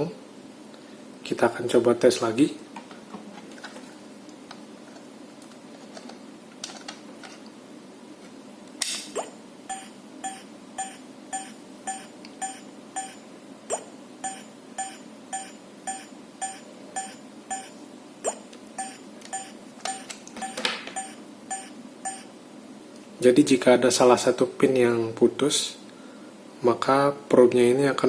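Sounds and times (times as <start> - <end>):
sharp click: 8.8 - 9.3
short electronic beeps: 9.2 - 22.3.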